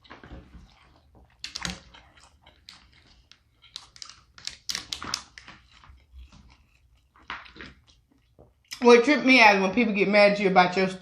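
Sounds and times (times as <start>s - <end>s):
crab shells cracking: 1.4s - 8.3s.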